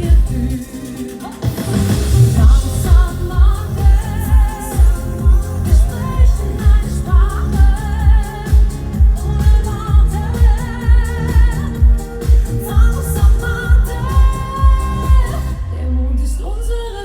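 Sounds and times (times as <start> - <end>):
kick drum beat: 0.0 - 0.6, 1.4 - 15.5.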